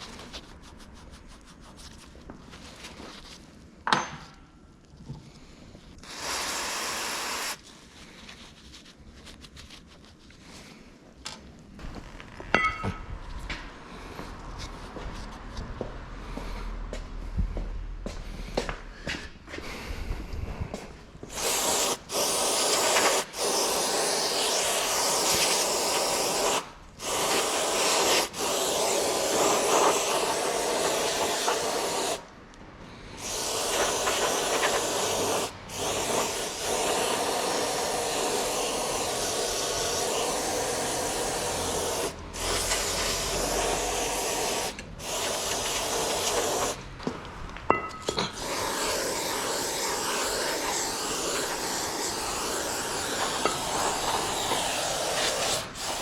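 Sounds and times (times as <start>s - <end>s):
aerosol spray hissing: 6.0s - 7.6s, 21.2s - 32.2s, 33.2s - 46.8s, 48.3s - 56.0s.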